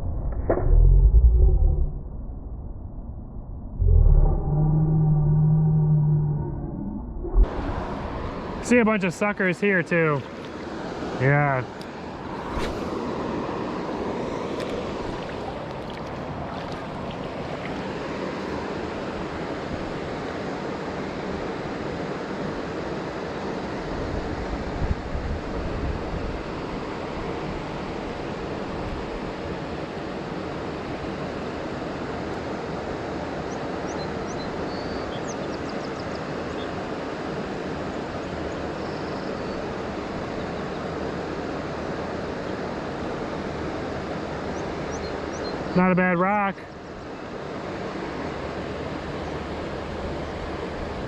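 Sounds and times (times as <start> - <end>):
wind rumble on microphone: 0.0 - 8.6, 23.7 - 30.2
river water rushing: 7.5 - 23.7.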